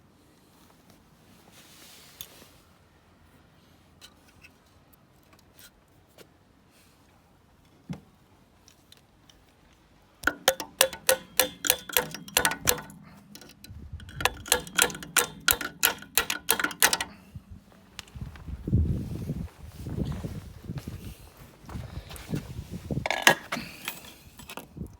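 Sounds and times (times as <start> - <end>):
sharp metallic clicks of hand tool: 10.2 - 17.2.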